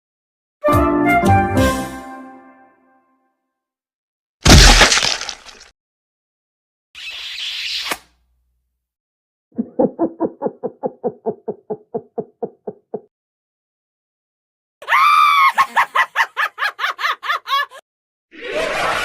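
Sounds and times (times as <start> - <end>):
low laugh-like sound effect: 9.5 - 13.1, 16.9 - 19.0.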